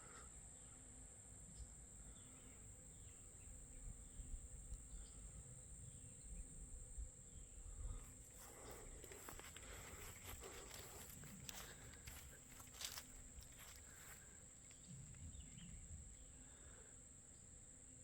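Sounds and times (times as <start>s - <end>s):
high-pitched insect chorus: 0.0s - 18.0s
wind rumble on microphone: 3.0s - 8.2s.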